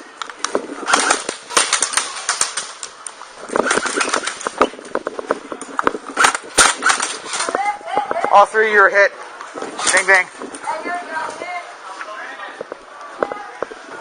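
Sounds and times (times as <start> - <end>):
airsoft guns firing: 0.8 - 2.9, 3.6 - 4.7, 6.1 - 7.6.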